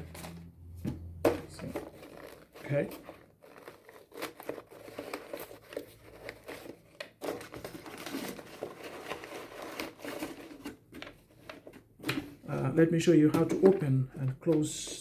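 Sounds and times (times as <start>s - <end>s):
packaging crinkling: 1.5s - 11.8s.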